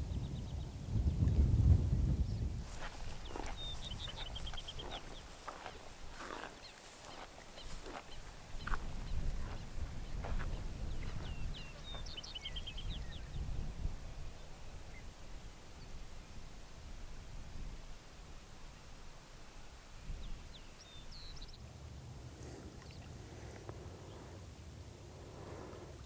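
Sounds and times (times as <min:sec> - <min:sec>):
songbird singing with trill: 0:02.2 - 0:05.9, 0:06.5 - 0:16.5, 0:19.5 - 0:21.7.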